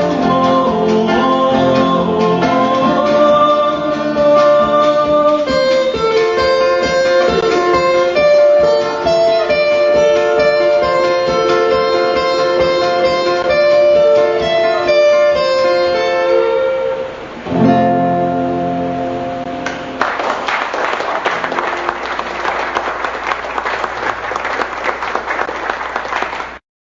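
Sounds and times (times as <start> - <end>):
guitar music: 0.0 - 20.2, 21.2 - 23.2
audience applause: 19.6 - 26.6.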